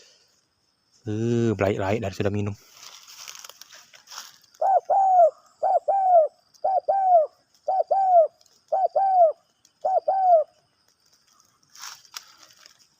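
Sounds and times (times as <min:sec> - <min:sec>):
dove cooing: 0:04.6 - 0:10.6.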